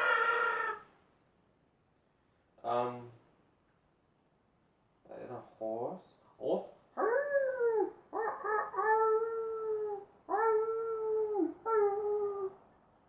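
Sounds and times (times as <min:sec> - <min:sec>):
person howling like a wolf: 0:07.0 - 0:12.6.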